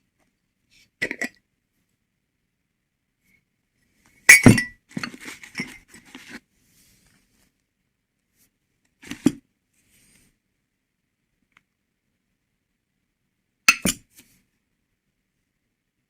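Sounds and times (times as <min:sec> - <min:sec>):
glassware clinking: 0:04.3 - 0:04.8, 0:13.7 - 0:14.0.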